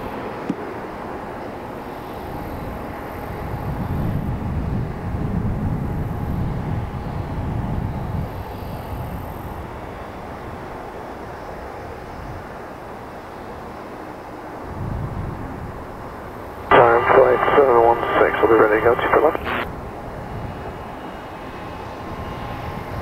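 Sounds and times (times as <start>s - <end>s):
jet engine whine: 0.0s - 23.0s
jet engine rumble: 16.5s - 19.7s.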